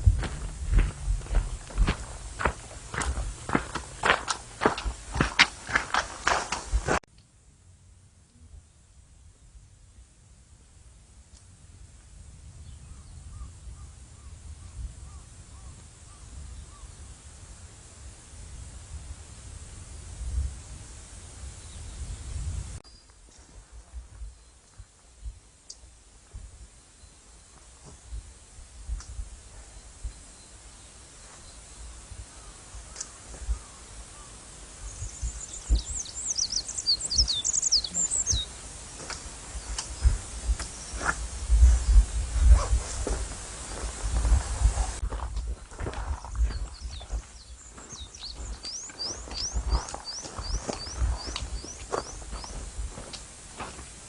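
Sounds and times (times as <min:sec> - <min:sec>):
low thumps: 0:00.0 - 0:07.0
wind rumble on microphone: 0:00.0 - 0:07.0, 0:10.6 - 0:27.1, 0:27.7 - 0:54.0
small bird chirping and whistling: 0:34.9 - 0:38.6, 0:46.5 - 0:52.6.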